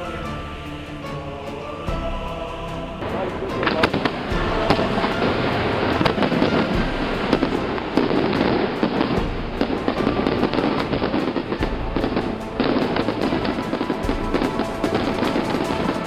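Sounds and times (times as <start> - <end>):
fireworks crackle: 3.6 - 16.0.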